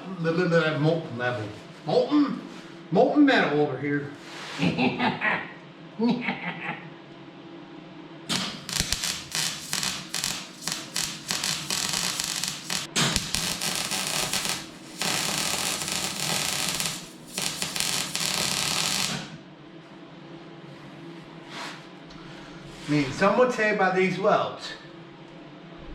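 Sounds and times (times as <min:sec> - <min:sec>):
arc welding crackling: 0:08.3 - 0:19.4.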